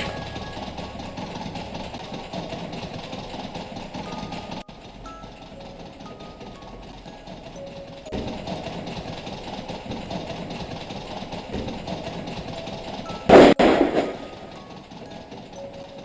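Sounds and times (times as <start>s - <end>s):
loud crash: 13.3s - 14.6s.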